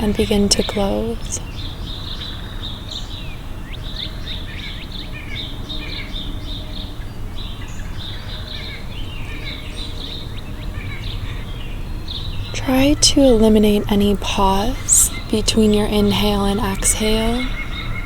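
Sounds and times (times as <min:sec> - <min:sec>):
songbirds chirping: 0:00.0 - 0:18.0
low background rumble: 0:08.9 - 0:18.0.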